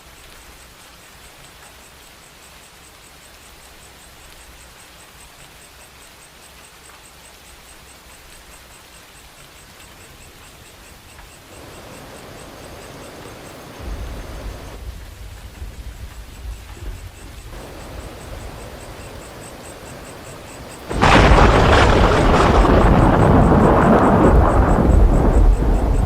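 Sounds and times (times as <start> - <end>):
insect chirping high and faint: 0.0 - 26.0
light rain: 0.0 - 26.0
river flowing: 8.2 - 14.8, 17.5 - 26.0.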